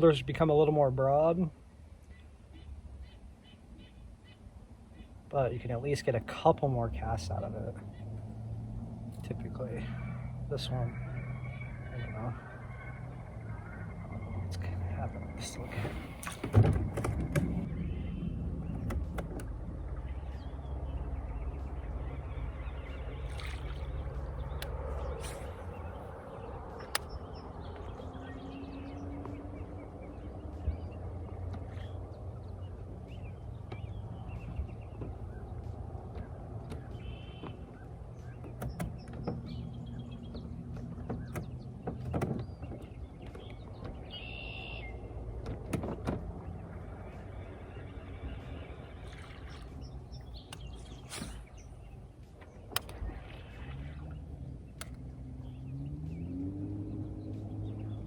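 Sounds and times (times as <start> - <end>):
boat motor humming: 0.0 - 58.0
sharp clicks and knocks: 15.8 - 17.8, 18.7 - 19.6, 38.3 - 44.0, 45.4 - 46.3
light clicks: 26.7 - 27.9
high chirping calls: 46.4 - 58.0.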